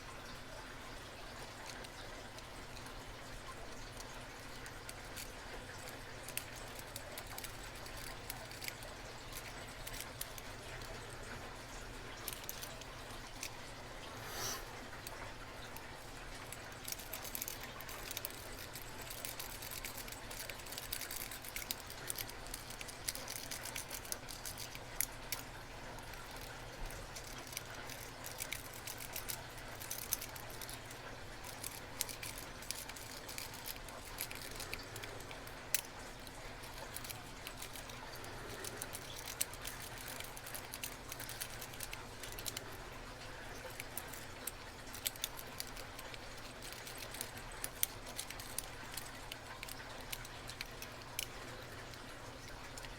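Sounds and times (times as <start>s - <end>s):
light metallic scraping: 12.1s - 15.2s.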